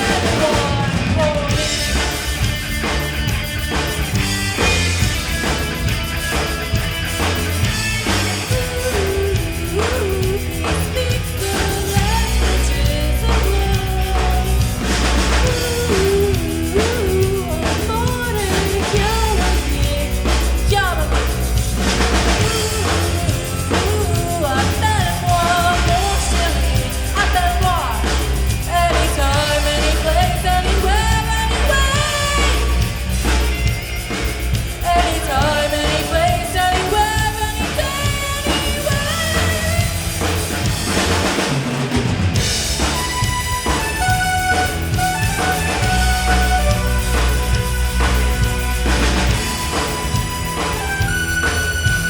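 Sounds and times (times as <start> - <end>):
person singing: 0.0 - 2.2, 8.2 - 21.4, 22.3 - 33.4, 34.8 - 40.4
live rock band playing: 0.0 - 52.0.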